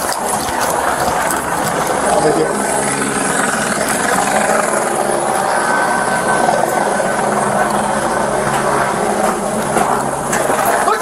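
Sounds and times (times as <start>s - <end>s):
helicopter hovering drone: 0.0s - 11.0s.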